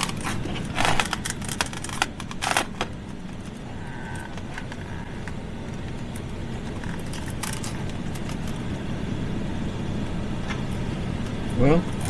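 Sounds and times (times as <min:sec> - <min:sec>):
air conditioning blowing: 0:00.0 - 0:12.0.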